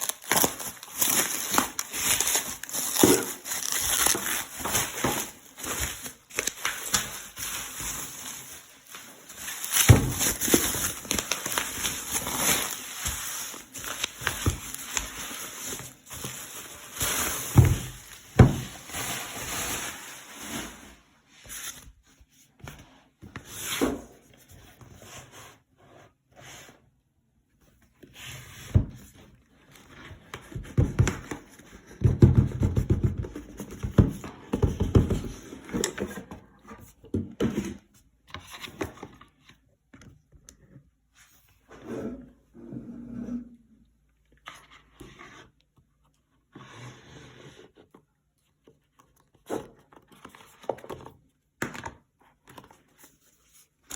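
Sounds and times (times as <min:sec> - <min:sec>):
packaging rustling: 0:00.0 - 0:21.0.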